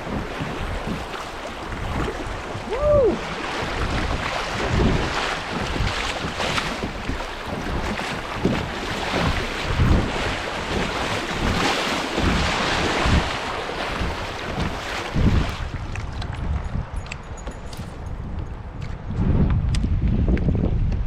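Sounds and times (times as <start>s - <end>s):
water rushing through rapids: 0.0s - 15.8s
wind buffeting microphone: 0.0s - 21.0s.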